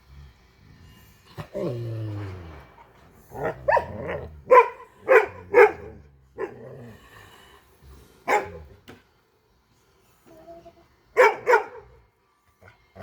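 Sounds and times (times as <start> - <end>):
dog barking: 3.7 - 6.6, 8.3 - 8.7, 11.2 - 12.0.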